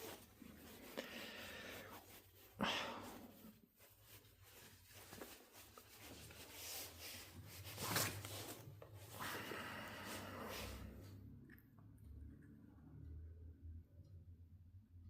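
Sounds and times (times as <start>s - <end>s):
hands rubbing and handling metal: 0.0s - 9.4s.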